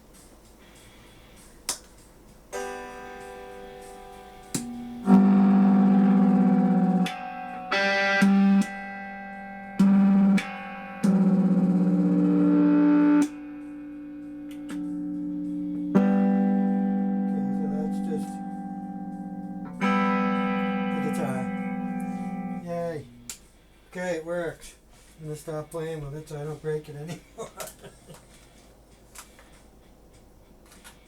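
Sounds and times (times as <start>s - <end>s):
electric guitar through amplifier: 2.6s - 23.5s.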